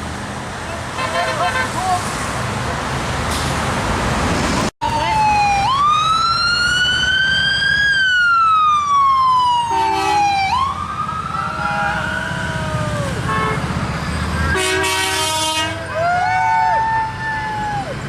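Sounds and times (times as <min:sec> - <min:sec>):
traffic rumble: 0:00.0 - 0:18.0
vehicle horns honking: 0:01.0 - 0:01.8, 0:09.7 - 0:10.3, 0:13.2 - 0:13.8, 0:14.4 - 0:15.9
emergency siren wailing: 0:04.8 - 0:13.3, 0:14.4 - 0:18.0.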